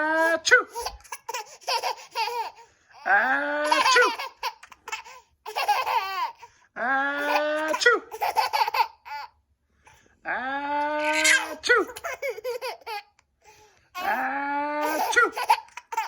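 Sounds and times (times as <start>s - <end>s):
baby laughing: 0.2s - 6.5s, 7.2s - 9.4s, 10.9s - 13.2s, 14.0s - 14.2s, 14.8s - 16.0s.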